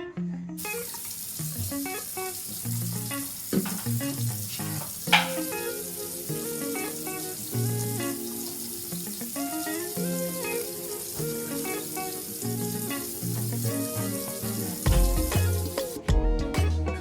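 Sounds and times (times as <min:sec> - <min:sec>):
plucked guitar music: 0:00.0 - 0:17.0
tap water running: 0:00.6 - 0:16.0.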